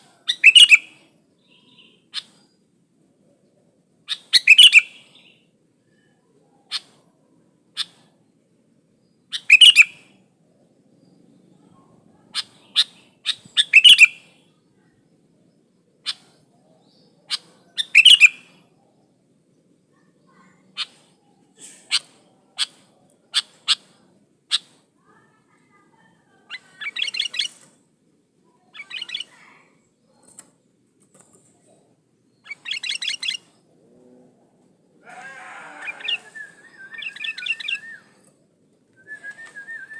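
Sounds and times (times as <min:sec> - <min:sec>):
bird calling and chattering: 0:00.0 - 0:02.6, 0:04.1 - 0:05.4, 0:06.6 - 0:07.1, 0:07.8 - 0:08.2, 0:09.2 - 0:10.1, 0:12.2 - 0:14.4, 0:15.9 - 0:18.8, 0:19.9 - 0:27.7, 0:28.5 - 0:34.0, 0:35.0 - 0:38.4.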